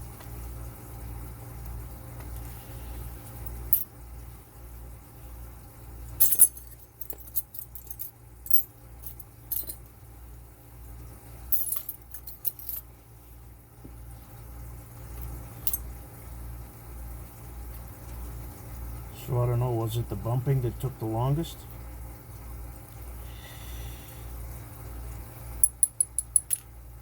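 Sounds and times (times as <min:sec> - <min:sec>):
steady low hum: 0:00.0 - 0:27.0
metallic clicks of padlock parts: 0:25.6 - 0:26.7.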